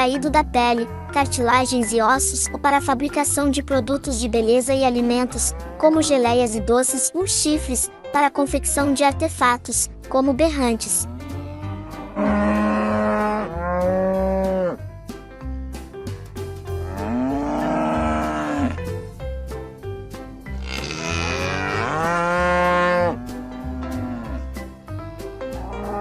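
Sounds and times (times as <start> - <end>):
cattle mooing: 0.8 - 1.7, 4.9 - 6.0, 11.0 - 14.8, 16.8 - 18.8, 20.6 - 24.4, 25.6 - 26.0
background music with low beat: 9.6 - 26.0.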